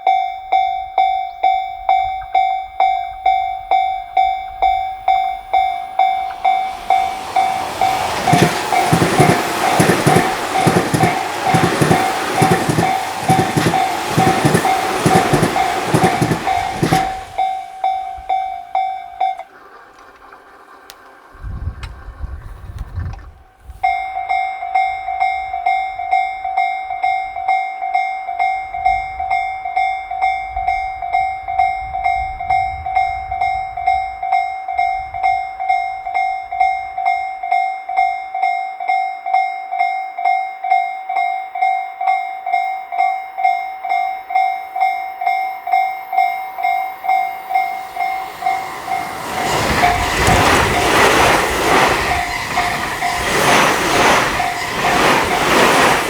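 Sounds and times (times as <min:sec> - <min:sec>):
level crossing warning bell: 0:00.0 - 0:20.8, 0:23.8 - 0:56.0
train wheels rumbling on rails: 0:01.0 - 0:24.4, 0:44.8 - 0:56.0.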